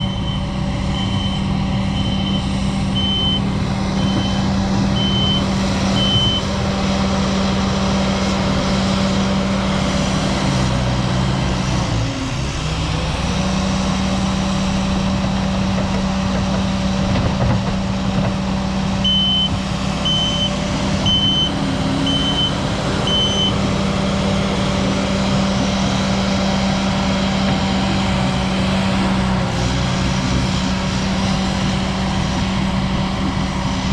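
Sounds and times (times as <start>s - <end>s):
backup alarm beeping: 0.0s - 6.5s, 19.0s - 23.7s
skid steer engine running: 0.0s - 33.9s.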